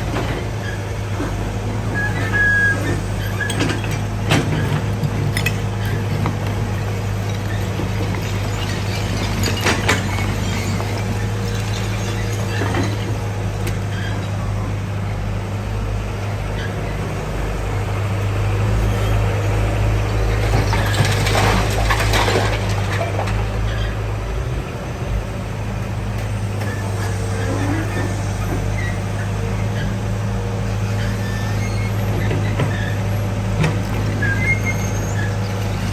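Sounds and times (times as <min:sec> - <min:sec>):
excavator engine humming: 0:00.0 - 0:35.9
debris crunching and clattering: 0:03.6 - 0:13.8, 0:20.4 - 0:23.6.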